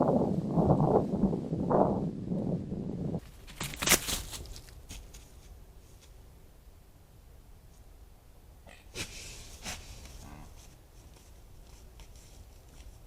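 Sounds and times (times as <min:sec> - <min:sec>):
deer snorting: 0:08.6 - 0:10.8.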